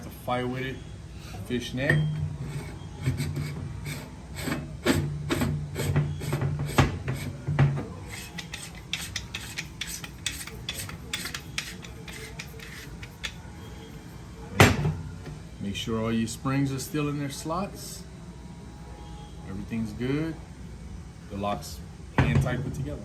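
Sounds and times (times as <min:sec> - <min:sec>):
metal parts scraping and clicking: 0:08.1 - 0:13.5.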